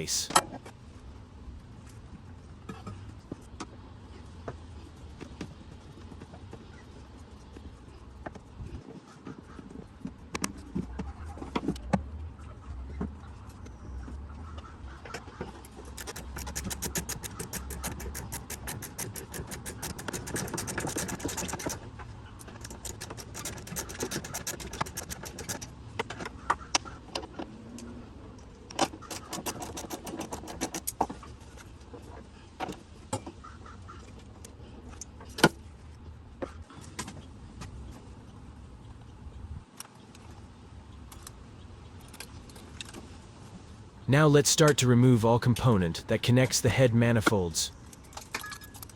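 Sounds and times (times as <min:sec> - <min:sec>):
rapid ratchet clicking: 0:16.0 - 0:21.7.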